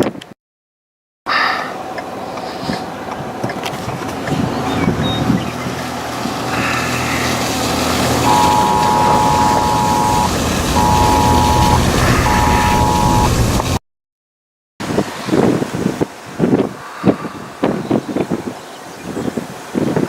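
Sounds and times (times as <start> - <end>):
vehicle noise: 1.3 - 13.8
rushing wind: 1.4 - 13.8, 14.8 - 20.0
sustained tones: 7.8 - 13.7.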